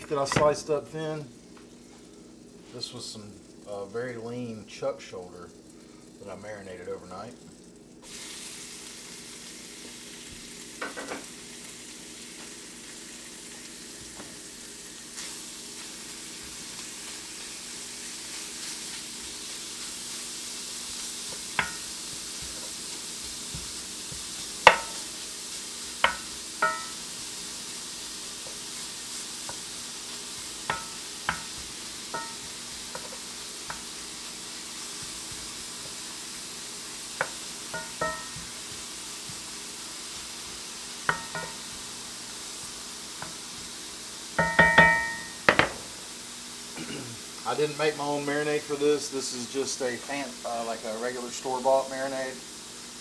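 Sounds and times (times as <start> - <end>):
meat sizzling in a skillet: 0.0 - 53.0
metal utensil tapping pan: 21.3 - 25.1, 26.0 - 27.0, 30.4 - 34.0, 37.2 - 38.8, 41.1 - 41.8, 44.4 - 45.8.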